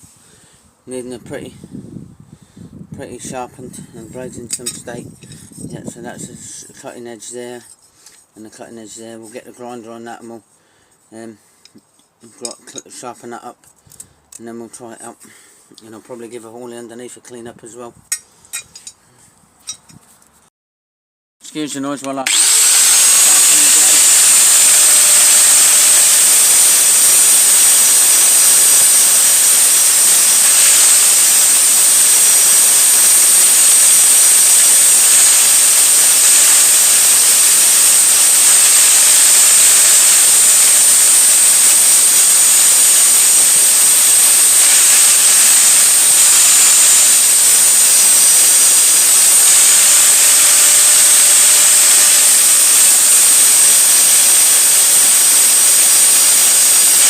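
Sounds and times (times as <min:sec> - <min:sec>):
grinder sharpening a blade: 0:27.3 - 0:56.0.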